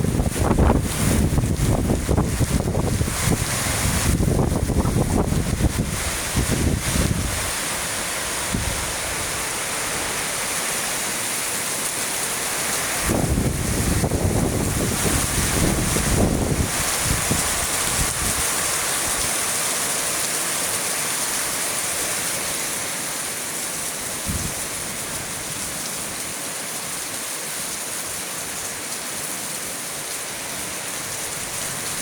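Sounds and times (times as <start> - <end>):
wind rumbling on microphone: 0.0 - 9.6, 12.8 - 19.3, 24.2 - 25.6
heavy rain: 0.0 - 32.0.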